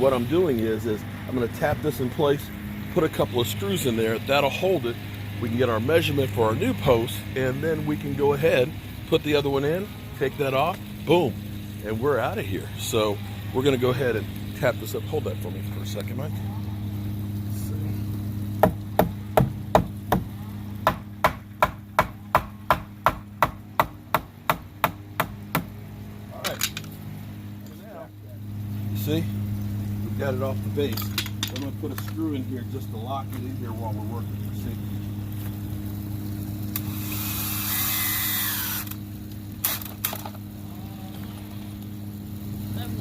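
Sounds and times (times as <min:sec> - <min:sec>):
hammer tapping wood: 0:18.6 - 0:25.7
power drill driving screw: 0:36.8 - 0:39.0, 0:39.6 - 0:40.3.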